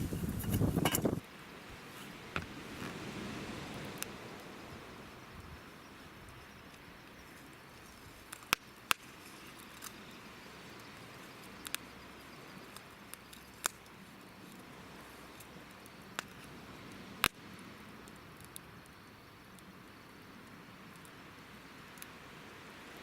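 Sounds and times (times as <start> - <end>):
campfire crackling: 0.0 - 23.0
faint steady hiss: 0.0 - 23.0
sharp pops of fire: 17.2 - 17.6.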